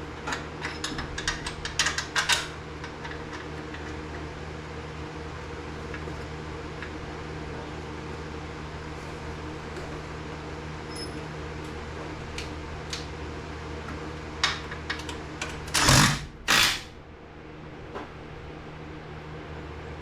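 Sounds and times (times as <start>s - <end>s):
steady fan-like hum: 0.0s - 20.0s
loud rushing bursts: 15.8s - 16.9s.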